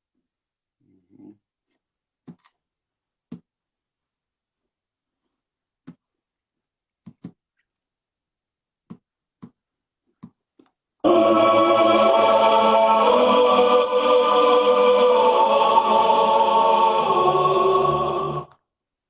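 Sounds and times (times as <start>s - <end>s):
choir-like voices holding chords: 11.0s - 18.6s.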